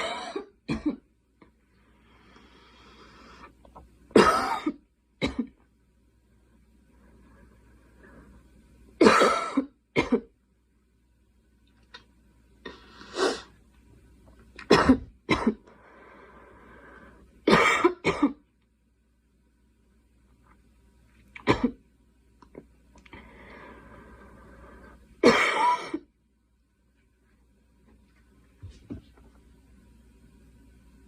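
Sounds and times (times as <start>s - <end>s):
girl coughing: 0.0s - 1.0s, 4.2s - 5.6s, 9.0s - 10.3s, 14.7s - 15.6s, 17.5s - 18.4s, 21.5s - 21.8s, 25.2s - 26.1s.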